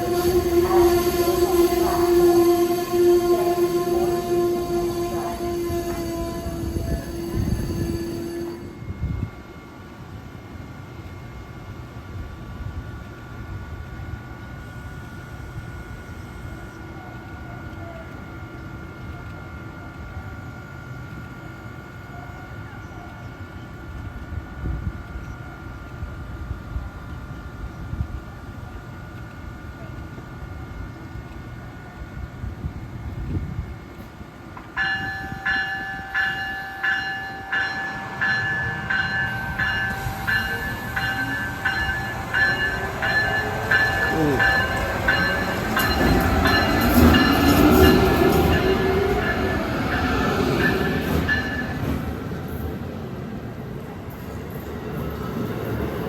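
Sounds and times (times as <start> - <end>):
locomotive bell ringing: 0.0 - 10.8, 34.6 - 52.2
train high whine: 0.0 - 56.0
train low rumble: 0.0 - 56.0.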